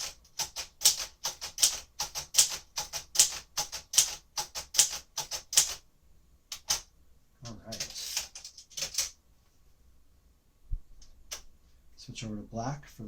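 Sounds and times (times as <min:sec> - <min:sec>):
typewriter typing: 0:00.0 - 0:05.8, 0:06.5 - 0:06.9, 0:07.7 - 0:09.2.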